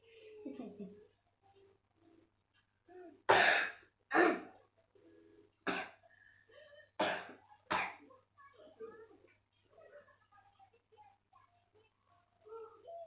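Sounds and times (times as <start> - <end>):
child coughing: 3.3 - 4.5, 7.0 - 8.0.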